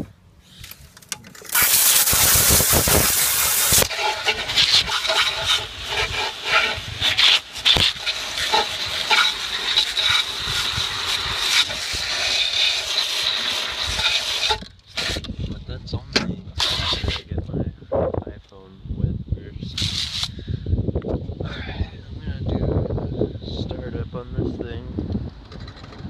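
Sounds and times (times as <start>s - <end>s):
garden hose spraying water: 1.4s - 15.2s
water splashing on mower: 1.5s - 14.6s.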